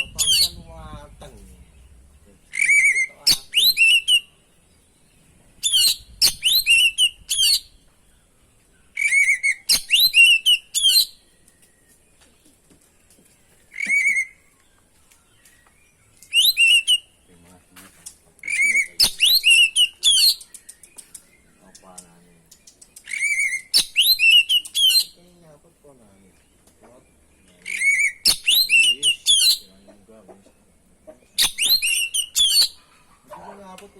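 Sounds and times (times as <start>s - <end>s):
bird singing whistled notes: 0.0s - 12.1s, 13.7s - 17.6s, 18.4s - 25.2s, 26.4s - 29.8s, 31.4s - 32.8s.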